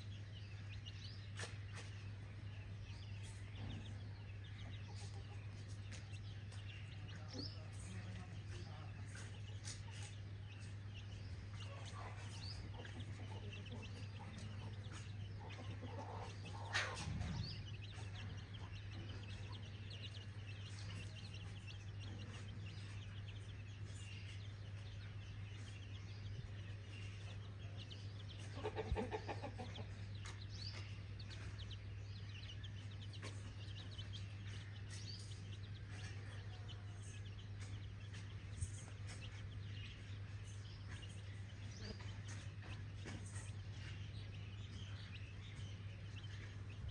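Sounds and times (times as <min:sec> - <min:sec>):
chickens clucking: 0:00.0 - 0:46.9.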